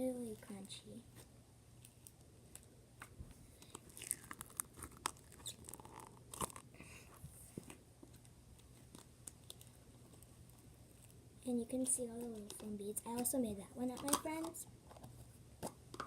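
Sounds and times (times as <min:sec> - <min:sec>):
foam slime crunching: 0:03.6 - 0:06.7.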